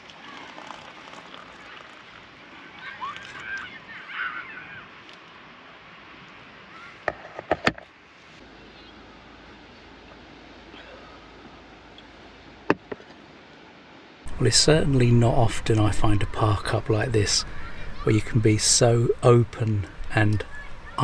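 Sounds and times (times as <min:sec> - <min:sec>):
steady background hiss: 0:13.2 - 0:21.0
birds calling: 0:14.3 - 0:21.0.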